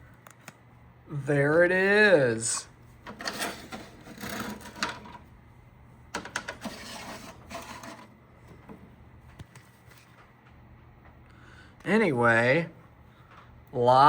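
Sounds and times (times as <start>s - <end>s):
clicks and rattling handling noises: 3.0s - 5.2s, 6.2s - 10.3s.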